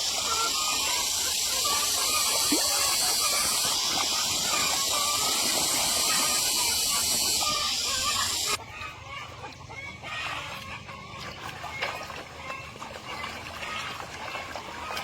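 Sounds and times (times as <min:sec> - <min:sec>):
loud high-pitched hiss: 0:00.0 - 0:08.6
chickens clucking: 0:00.0 - 0:15.0.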